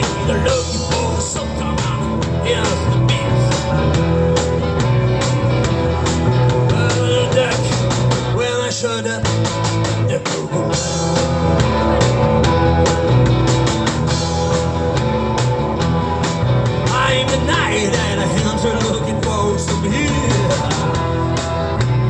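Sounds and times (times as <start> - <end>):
rock band playing: 0.0 - 22.0.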